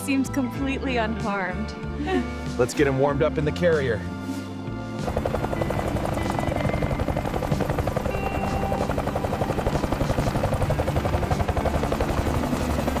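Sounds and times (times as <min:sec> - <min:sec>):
music: 0:00.0 - 0:13.0
rapid chopping pulse: 0:05.0 - 0:13.0.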